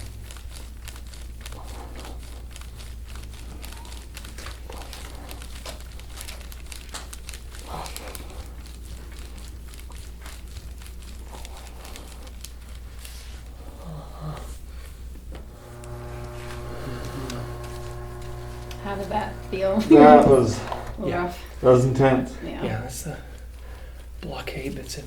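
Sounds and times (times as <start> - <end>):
crinkling and rustling: 0.0 - 13.7
small crackles: 0.0 - 19.9
steady low hum: 13.4 - 25.0.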